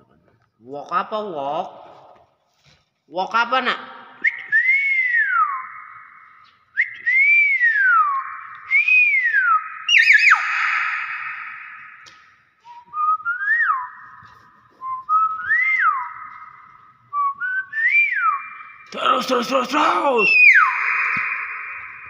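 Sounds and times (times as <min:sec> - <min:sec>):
myna whistling: 0:04.2 - 0:22.0
harsh bird call: 0:07.4 - 0:12.4, 0:17.7 - 0:22.0.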